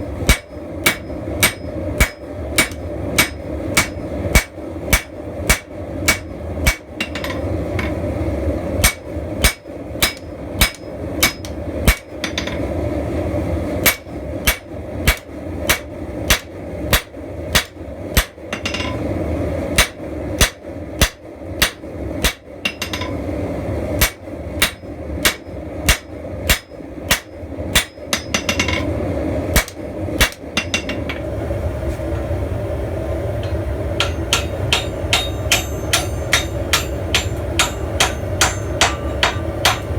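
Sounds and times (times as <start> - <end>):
steady background noise: 0.0 - 39.9
hammer striking steel on anvil: 0.2 - 8.0, 8.8 - 12.7, 13.8 - 19.1, 19.8 - 23.2, 24.0 - 28.9, 29.6 - 31.2, 33.4 - 39.9.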